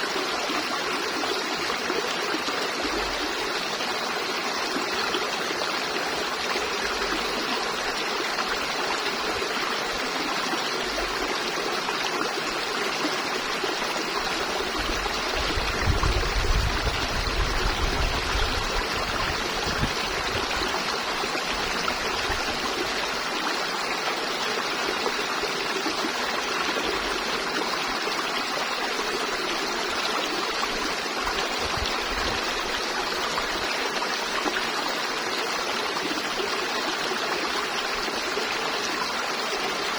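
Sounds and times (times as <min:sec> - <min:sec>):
river water rushing over rocks: 0:00.1 - 0:39.9.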